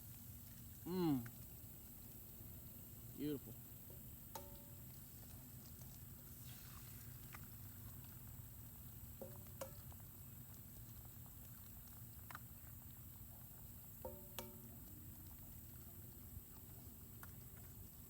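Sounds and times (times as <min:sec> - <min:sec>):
clicks and taps of cooking: 0:03.8 - 0:06.2, 0:09.0 - 0:11.2, 0:13.8 - 0:15.7
ringing knocks on cast iron pan: 0:04.4 - 0:04.7.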